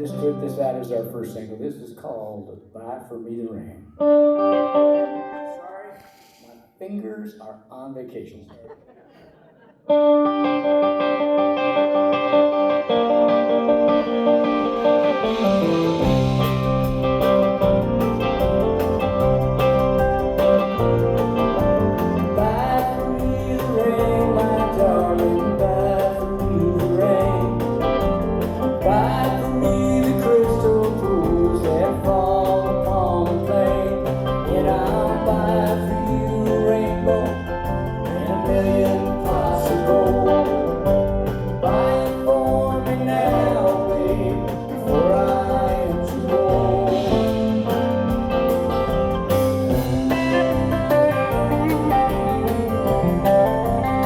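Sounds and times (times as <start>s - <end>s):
live country folk band: 0.0s - 6.3s, 9.9s - 54.0s
people singing harmony vocals: 22.4s - 27.7s, 28.8s - 47.6s.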